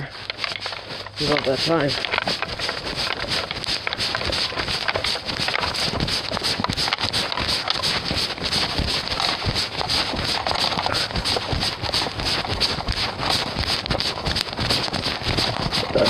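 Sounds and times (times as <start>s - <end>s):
clothing rustling: 0.0s - 16.0s
footsteps in snow: 0.0s - 16.0s.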